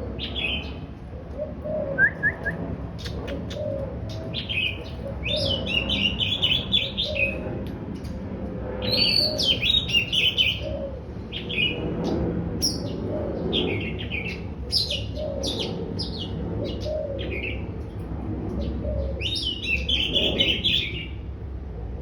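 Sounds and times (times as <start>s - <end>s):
bird singing whistled phrases: 2.0s - 2.6s.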